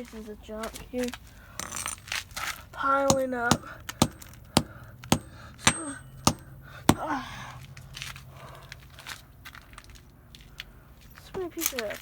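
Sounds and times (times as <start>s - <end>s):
hard plastic parts knocking: 3.1s - 7.2s.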